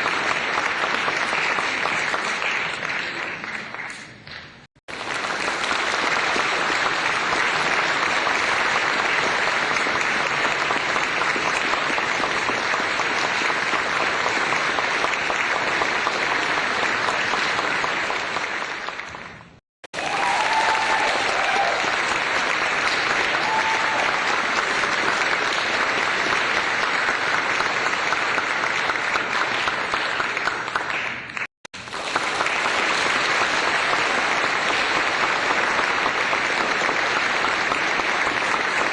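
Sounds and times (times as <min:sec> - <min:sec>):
crowd applauding: 0:00.0 - 0:38.9.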